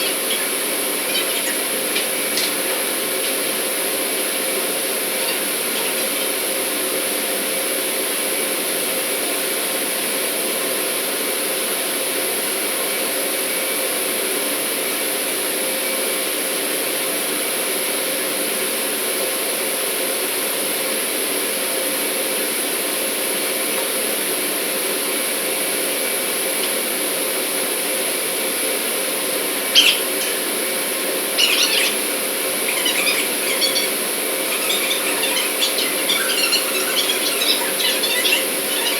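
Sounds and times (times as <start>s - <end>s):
short high squeals: 31.4s - 38.9s.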